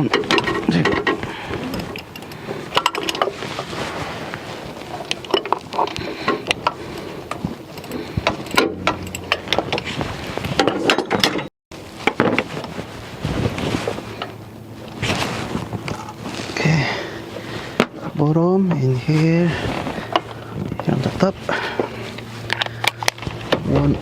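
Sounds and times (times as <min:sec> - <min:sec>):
ratchet clicks: 0:01.7 - 0:03.2
metal knocks: 0:08.2 - 0:10.0.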